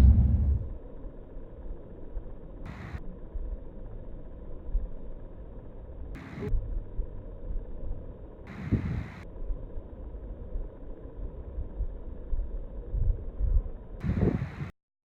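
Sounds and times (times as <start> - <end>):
slowed muffled storm rumble: 0.0 - 0.8.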